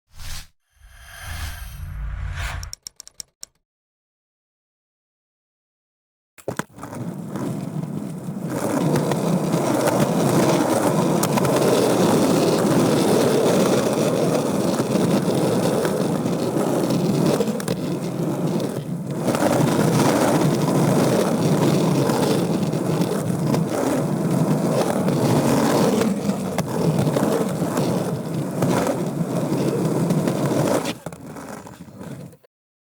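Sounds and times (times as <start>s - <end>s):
skateboard wheels rolling on concrete: 6.4s - 32.5s.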